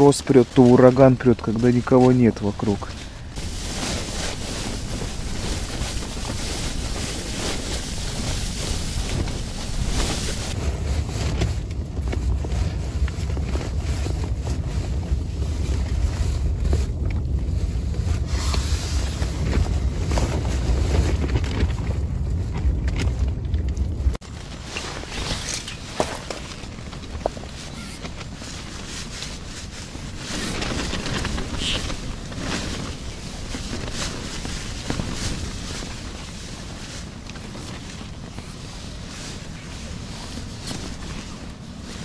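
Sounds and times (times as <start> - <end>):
storm wind buffeting microphone: 0.0 - 24.2.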